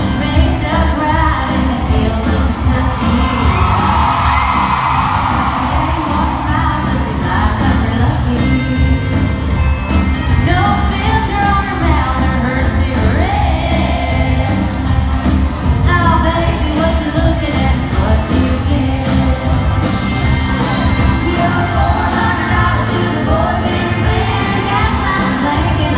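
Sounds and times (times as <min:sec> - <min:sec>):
women singing: 0:00.0 - 0:03.8, 0:05.5 - 0:09.0, 0:10.4 - 0:14.8, 0:15.9 - 0:19.6, 0:21.0 - 0:25.9
country band playing: 0:00.0 - 0:25.9.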